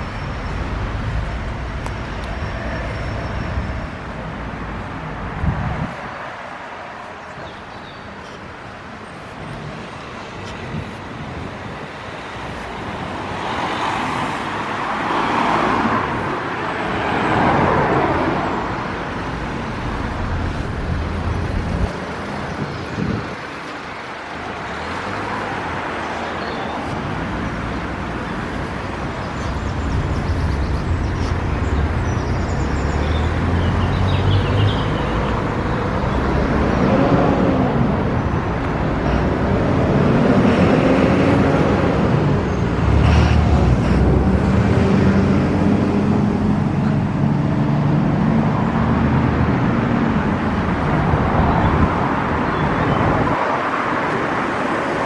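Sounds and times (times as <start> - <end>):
road traffic passing: 0.0 - 55.0.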